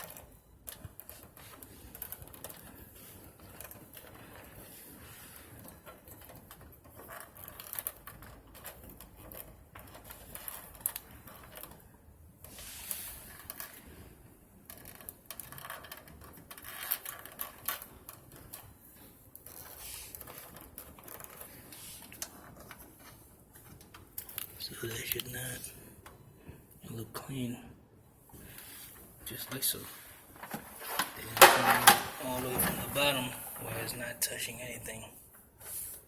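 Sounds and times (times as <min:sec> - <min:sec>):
plastic parts clicking and rattling: 0:00.0 - 0:11.8, 0:14.6 - 0:26.2, 0:30.4 - 0:33.7.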